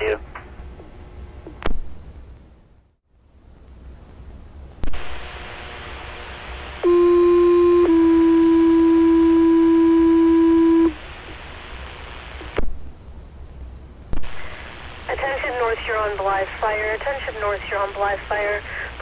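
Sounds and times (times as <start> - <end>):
radio static: 4.8 - 12.6, 14.2 - 19.0
two-tone paging tones: 6.8 - 11.0.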